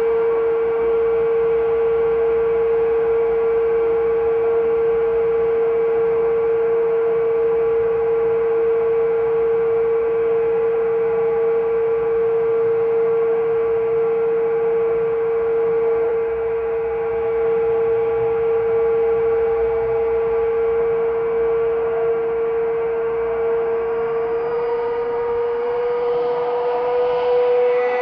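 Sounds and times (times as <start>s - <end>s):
eerie sustained drone: 12.4s - 28.0s.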